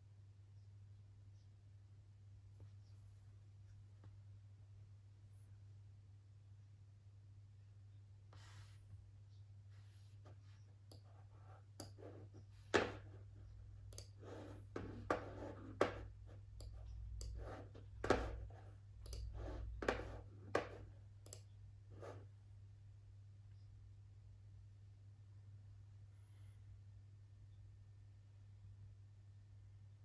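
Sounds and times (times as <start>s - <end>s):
steady low hum: 0.6s - 27.6s
clicks and taps: 10.8s - 21.5s.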